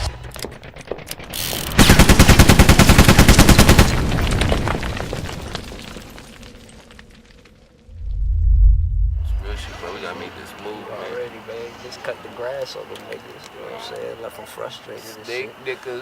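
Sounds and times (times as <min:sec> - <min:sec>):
automatic gunfire burst: 0:01.7 - 0:04.1.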